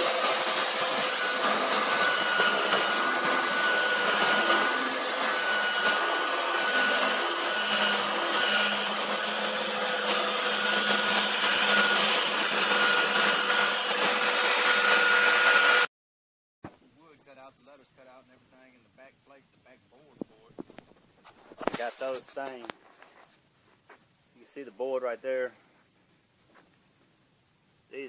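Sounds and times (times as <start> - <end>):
power tool motor whining: 0.0 - 15.9.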